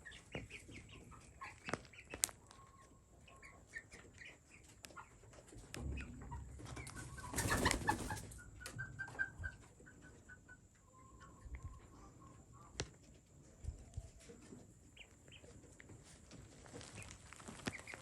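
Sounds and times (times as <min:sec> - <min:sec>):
chicks peeping and trilling: 0:00.0 - 0:18.0
rustling: 0:15.9 - 0:18.0.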